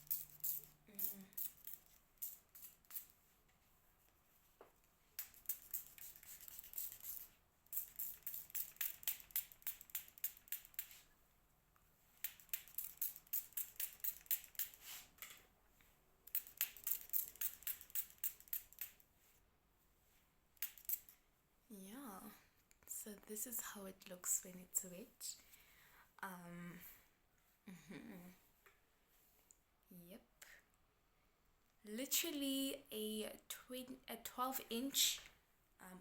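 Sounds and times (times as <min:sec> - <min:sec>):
spray bottle hissing sprays: 0:00.0 - 0:03.1, 0:05.2 - 0:11.1, 0:12.2 - 0:15.1, 0:16.3 - 0:19.0.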